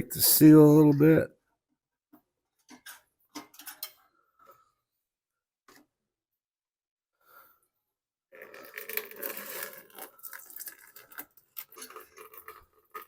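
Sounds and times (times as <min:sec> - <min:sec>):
fuel splashing into a bucket: 0:08.3 - 0:13.0.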